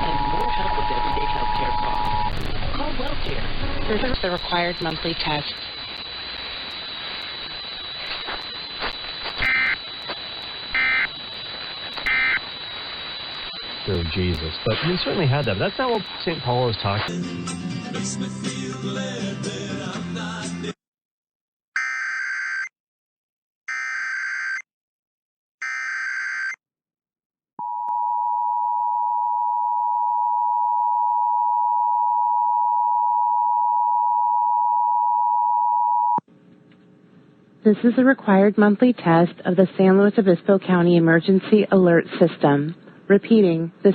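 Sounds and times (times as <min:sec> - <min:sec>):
buzzy data tone bursts: 0:00.0 - 0:17.1.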